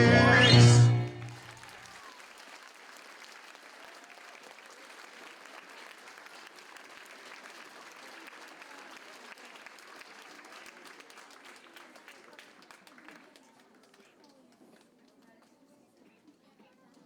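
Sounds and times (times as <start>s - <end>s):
audience applauding: 1.1s - 14.2s.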